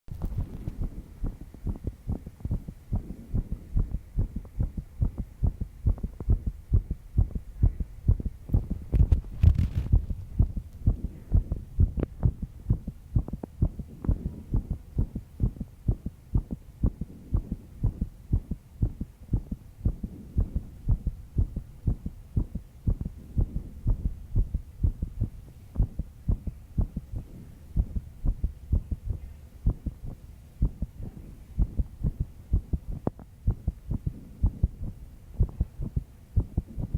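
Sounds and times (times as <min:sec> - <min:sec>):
fast heartbeat: 0:00.1 - 0:36.9.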